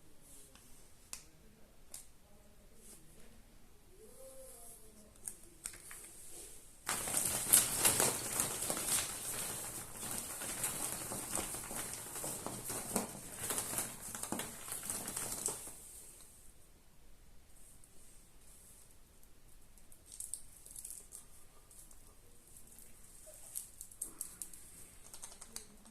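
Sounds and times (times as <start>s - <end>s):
foil wrapper crinkling: 6.8s - 15.9s.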